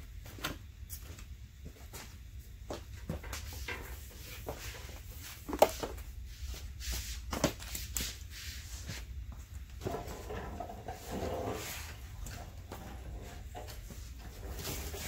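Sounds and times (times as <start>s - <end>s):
footsteps and shuffling: 0.2s - 15.0s.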